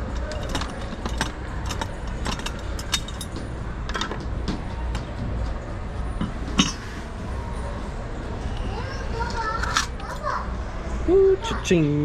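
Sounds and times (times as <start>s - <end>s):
coins clinking: 0.0s - 4.2s.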